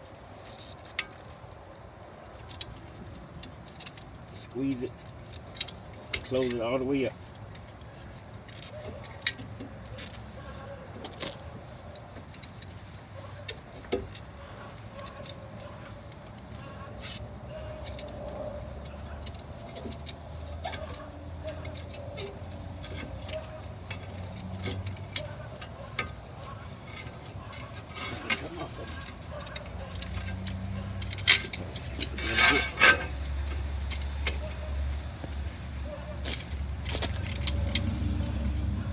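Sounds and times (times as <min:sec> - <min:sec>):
low steady rumble: 0:21.1 - 0:38.9.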